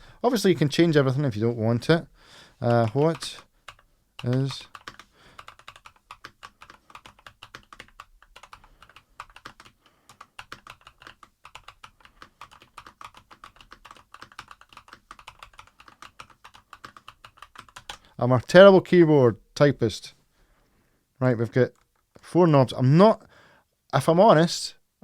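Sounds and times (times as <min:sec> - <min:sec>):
mechanical keyboard typing: 0:02.6 - 0:18.0.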